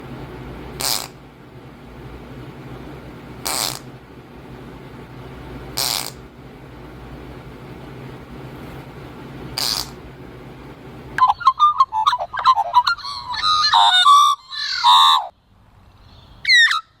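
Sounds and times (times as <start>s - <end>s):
steady low hum: 0.0s - 17.0s
bird harsh raspy call: 0.8s - 1.2s, 3.4s - 3.9s, 5.8s - 6.2s, 9.6s - 10.0s, 11.8s - 15.4s, 16.0s - 17.0s.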